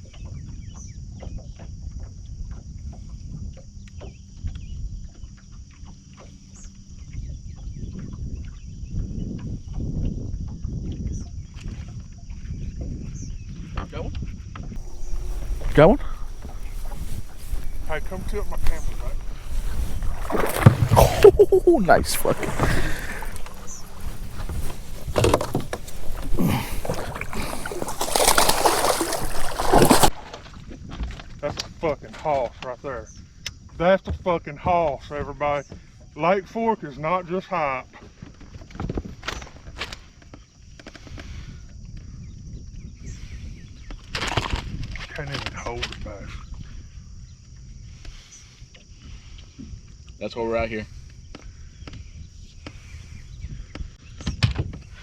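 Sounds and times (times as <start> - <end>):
insect drone: 14.8 - 30.2
fish splashing in water: 14.8 - 30.4.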